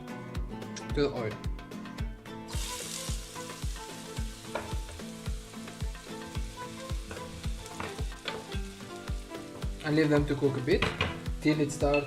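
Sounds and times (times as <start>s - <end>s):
background music with beat: 0.0s - 12.0s
onion sizzling in oil: 2.5s - 12.0s.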